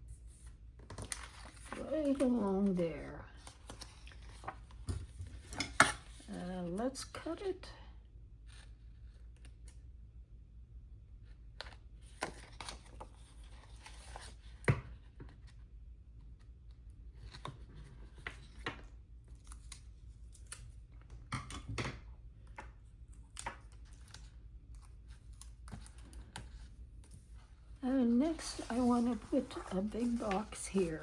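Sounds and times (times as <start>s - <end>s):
sticker paper rustling: 28.0s - 31.0s.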